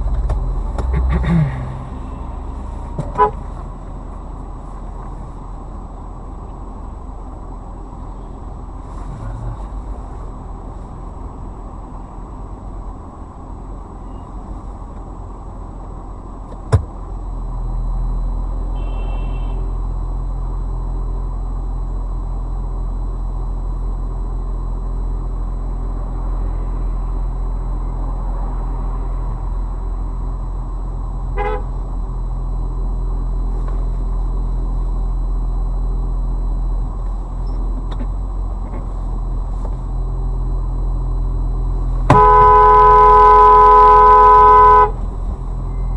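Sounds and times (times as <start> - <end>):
car engine and road rumble: 0.0 - 45.9
car horn toot: 3.0 - 3.5, 18.7 - 19.8, 31.3 - 31.8, 42.1 - 45.1.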